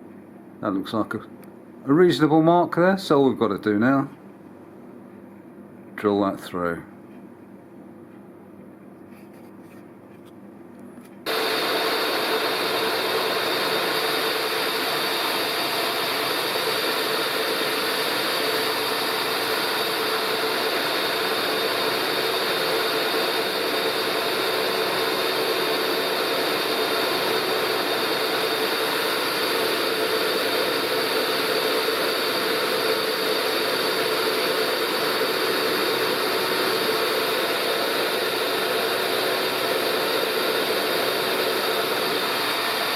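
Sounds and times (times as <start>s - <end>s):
milling machine whining: 11.3s - 42.9s.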